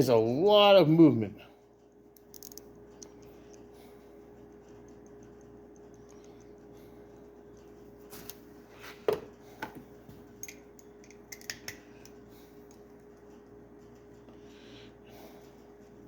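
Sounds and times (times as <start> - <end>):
faint steady hum: 0.0 - 16.0
metal socket clicking: 2.2 - 2.6.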